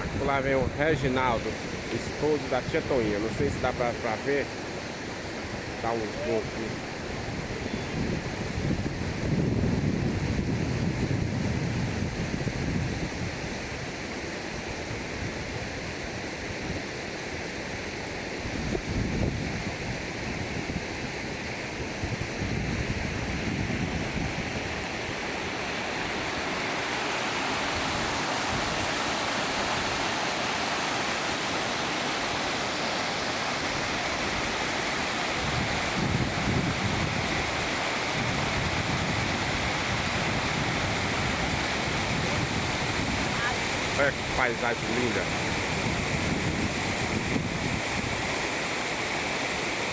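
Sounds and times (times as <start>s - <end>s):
waterfall rushing: 0.0s - 8.5s, 21.0s - 49.9s
wind buffeting microphone: 5.5s - 13.9s, 18.5s - 26.9s, 33.6s - 48.4s.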